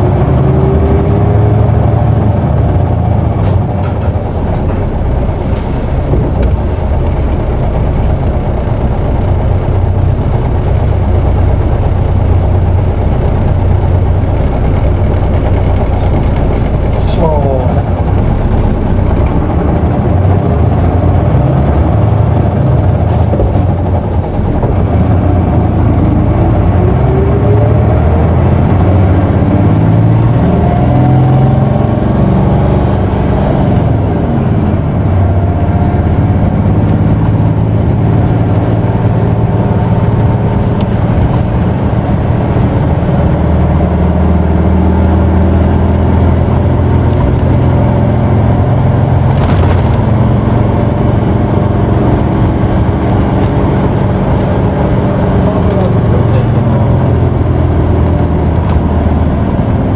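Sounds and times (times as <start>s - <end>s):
bus diesel engine revving: 0.0s - 59.9s.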